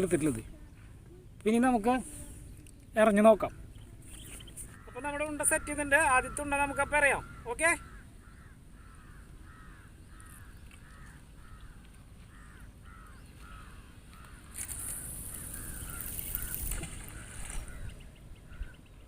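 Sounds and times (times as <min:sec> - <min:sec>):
crow cawing: 0:04.6 - 0:17.9
water sloshing with hissing rush: 0:14.4 - 0:18.1.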